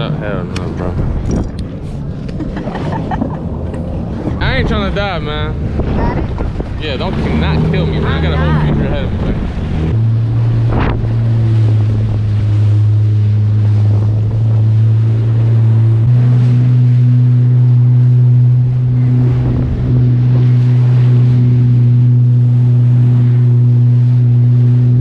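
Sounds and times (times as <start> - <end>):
jet ski engine running hard: 0.0 - 25.0
water rushing: 0.0 - 25.0.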